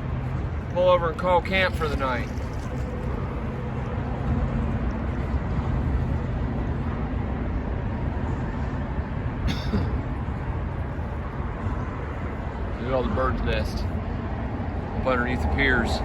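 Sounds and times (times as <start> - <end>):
highway traffic rumble: 0.0 - 16.0.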